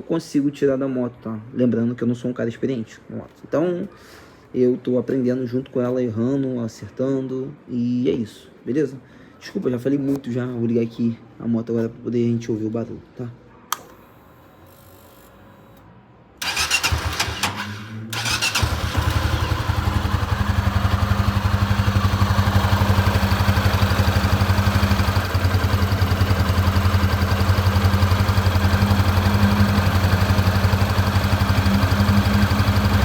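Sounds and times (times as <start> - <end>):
motorcycle engine starter cranking: 16.4 - 33.0
motorcycle engine idling: 18.2 - 33.0.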